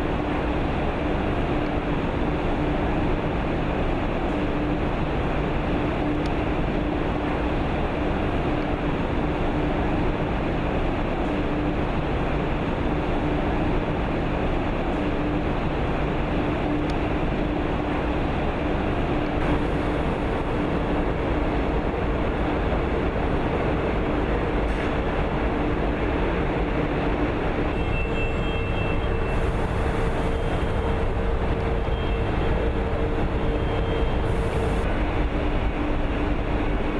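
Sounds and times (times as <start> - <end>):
industrial machine rumble: 0.0 - 36.9.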